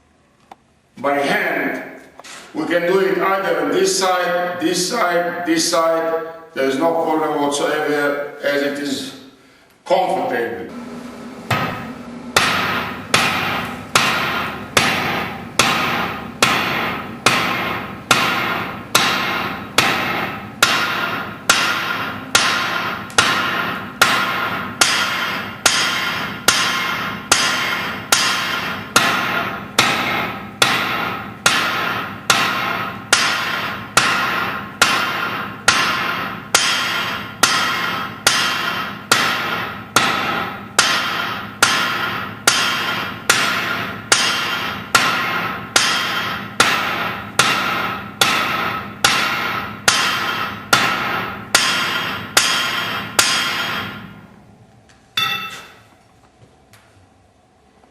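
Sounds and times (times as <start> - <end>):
hammer ringing on anvil: 12.4 - 54.0, 55.2 - 55.9.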